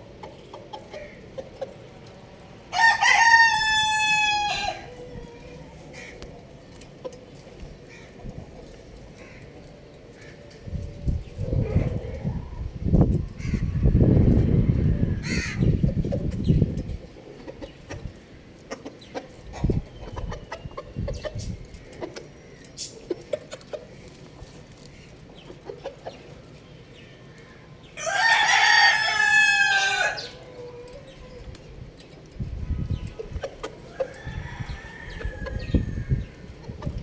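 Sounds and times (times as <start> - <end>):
rooster crowing: 2.7 - 5.7, 28.0 - 30.8, 33.9 - 36.2.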